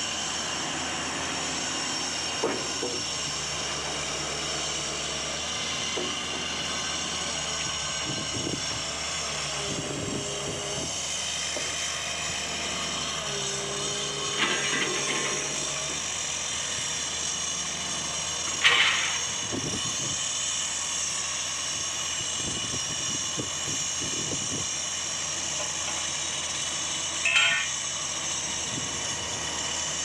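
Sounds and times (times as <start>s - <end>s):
rig engine running: 0.0s - 30.0s
loud metallic clangs: 27.3s - 27.7s.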